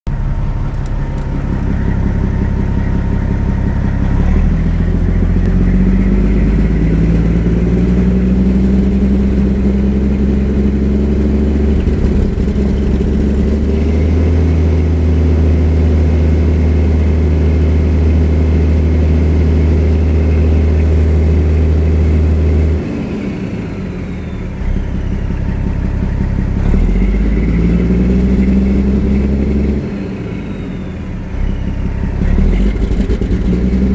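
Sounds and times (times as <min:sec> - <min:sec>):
diesel engine revving: 0:00.1 - 0:33.9.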